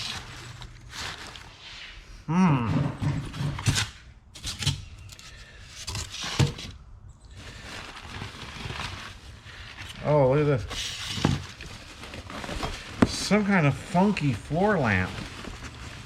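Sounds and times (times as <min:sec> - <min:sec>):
rummaging in a cardboard box: 0:00.0 - 0:02.0, 0:07.4 - 0:16.0
person grunting: 0:02.3 - 0:03.0.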